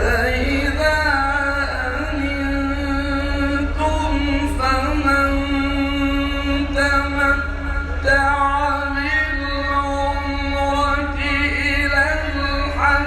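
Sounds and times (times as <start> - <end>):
low hum: 0.0 - 13.0
man chanting melodically: 0.0 - 13.0.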